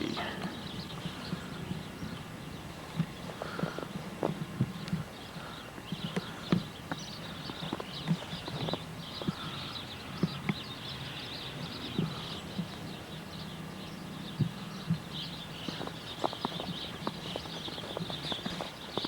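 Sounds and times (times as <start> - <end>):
footsteps crunching through snow: 15.6 - 19.0.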